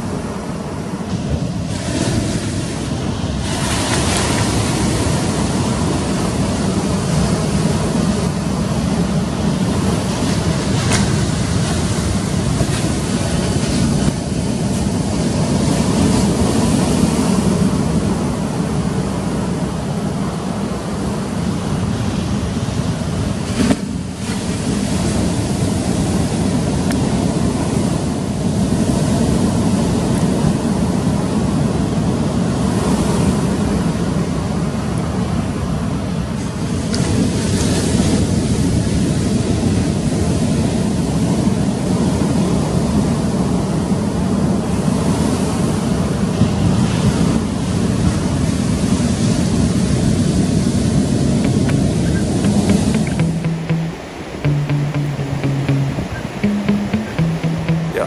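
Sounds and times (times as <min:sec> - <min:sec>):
ocean surf breaking: 0:00.0 - 0:17.2.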